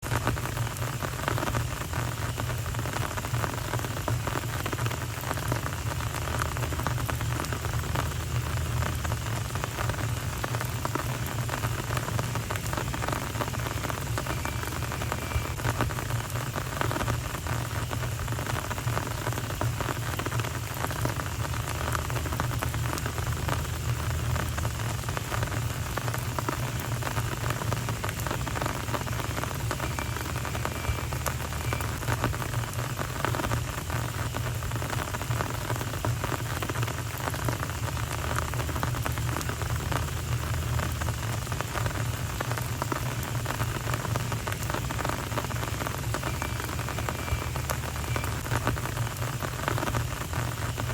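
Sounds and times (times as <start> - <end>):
rain on pavement: 0.0 - 50.9.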